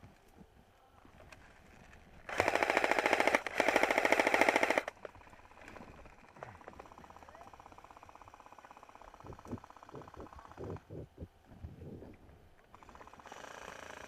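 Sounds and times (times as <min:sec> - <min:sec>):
airsoft gun automatic bursts: 0:02.3 - 0:10.2, 0:12.8 - 0:14.0.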